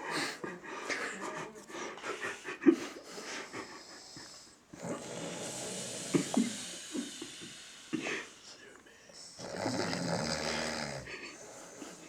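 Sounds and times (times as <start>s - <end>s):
man snoring: 4.8s - 8.5s, 9.2s - 11.1s.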